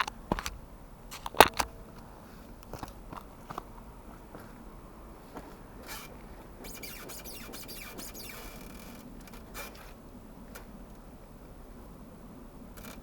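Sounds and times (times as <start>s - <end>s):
rapid fine ratchet clicking: 5.9s - 10.0s
wrench clicks: 6.7s - 9.9s.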